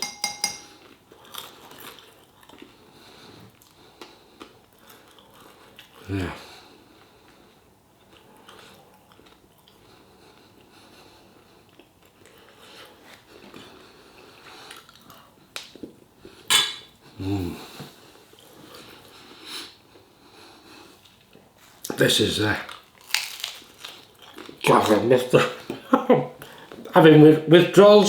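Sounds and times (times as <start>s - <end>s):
cutlery on a plate: 0.0s - 0.8s, 16.5s - 16.9s.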